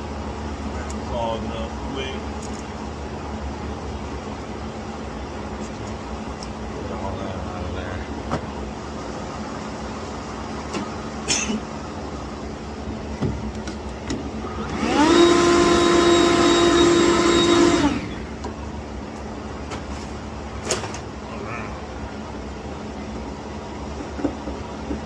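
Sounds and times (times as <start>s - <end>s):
small electric vacuum running: 14.4s - 18.4s.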